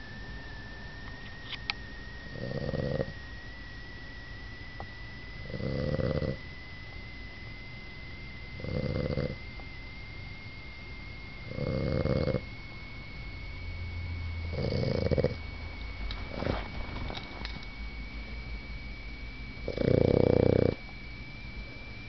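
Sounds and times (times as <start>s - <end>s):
dog snoring: 2.3s - 3.2s, 5.4s - 6.4s, 8.6s - 9.4s, 11.4s - 12.5s, 14.5s - 15.5s, 19.6s - 20.9s.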